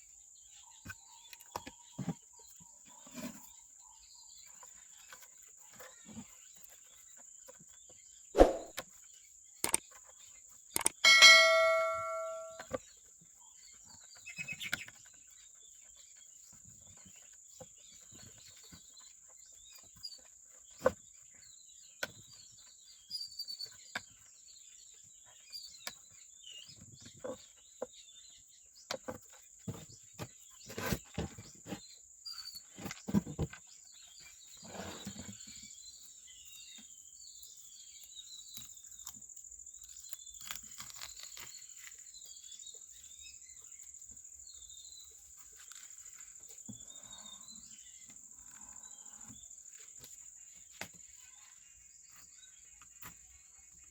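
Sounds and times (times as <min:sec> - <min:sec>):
small parts and tools clicking: 0:09.6 - 0:10.0, 0:10.7 - 0:12.6
bird chirps: 0:10.8 - 0:12.7.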